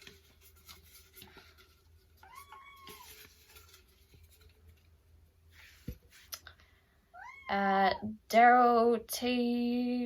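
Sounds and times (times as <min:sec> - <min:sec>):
faint rustling: 0:00.0 - 0:06.6
cat meowing: 0:02.2 - 0:03.2, 0:07.2 - 0:07.6.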